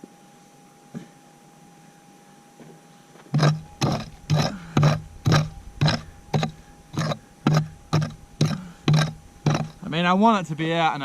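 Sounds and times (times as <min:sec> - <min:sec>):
hammer striking steel chisel on rock: 0:03.4 - 0:10.0.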